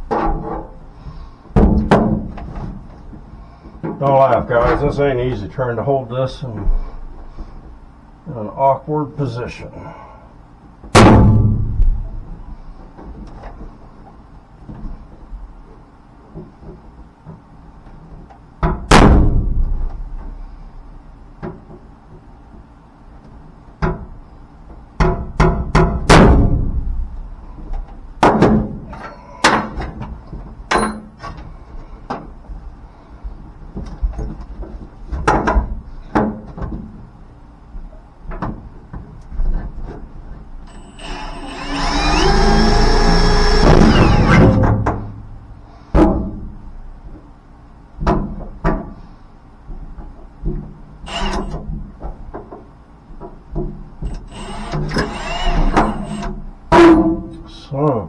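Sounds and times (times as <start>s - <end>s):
metal parts and tools clanking: 30.7s - 31.2s.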